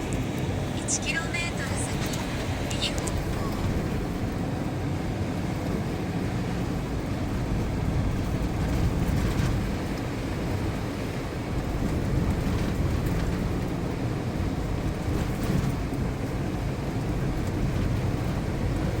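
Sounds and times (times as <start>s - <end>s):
car engine and tyre noise: 0.0s - 19.0s.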